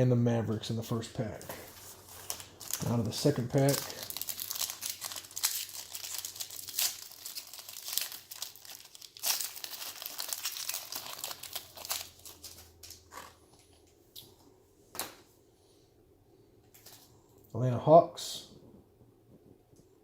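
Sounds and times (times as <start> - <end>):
foil wrapper crinkling: 1.4 - 13.4.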